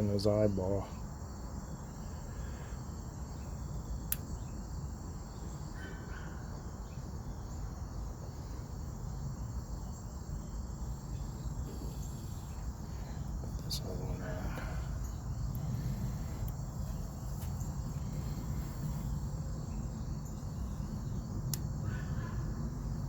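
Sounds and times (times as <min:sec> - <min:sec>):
low background rumble: 0:01.6 - 0:23.0
sharp click: 0:04.1 - 0:04.3.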